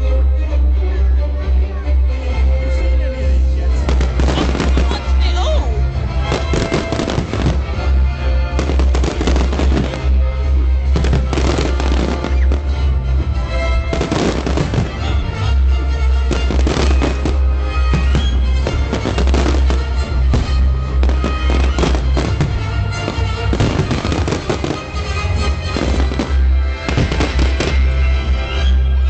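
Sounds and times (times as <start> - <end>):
loud music with heavy bass: 1.4 - 28.8
fireworks bursting and crackling: 3.8 - 13.0, 13.7 - 15.4, 16.2 - 28.1.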